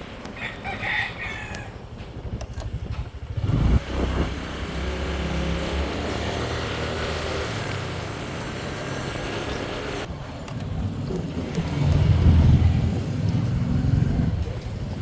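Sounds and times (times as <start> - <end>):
traffic: 0.0 - 15.0
motorcycle engine running: 2.8 - 10.1.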